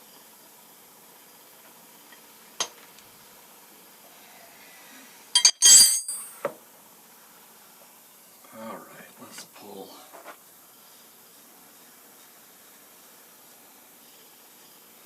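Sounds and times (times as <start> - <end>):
metal clinking against metal: 5.4 - 6.4.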